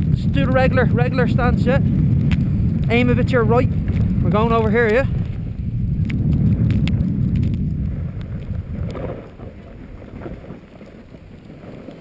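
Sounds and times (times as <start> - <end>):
snowboard sliding on snow: 0.0 - 12.0
wind buffeting microphone: 0.0 - 12.0.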